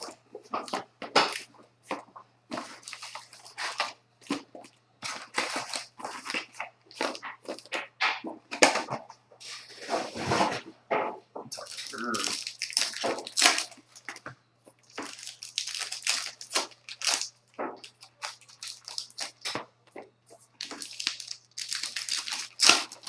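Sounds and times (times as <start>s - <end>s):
card pack wrappers crinkling and tearing: 2.5s - 7.8s, 11.6s - 14.2s, 14.8s - 19.6s, 20.5s - 23.0s.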